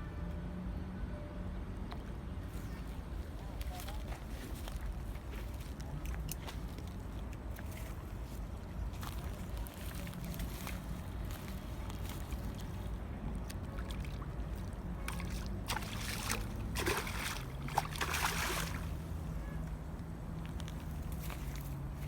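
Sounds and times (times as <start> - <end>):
boat motor humming: 6.7 - 22.0.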